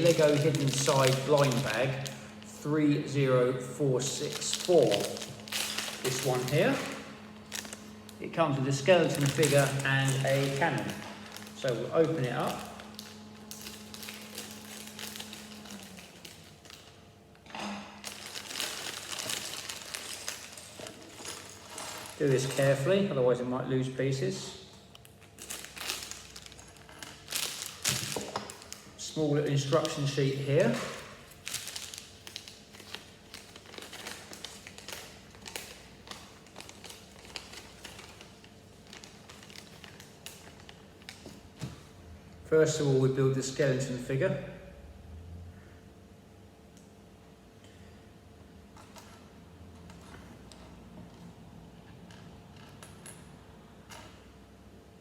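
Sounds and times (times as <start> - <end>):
plastic bag crinkling: 0.0 - 3.2, 3.8 - 17.2, 18.0 - 22.9, 25.0 - 41.9.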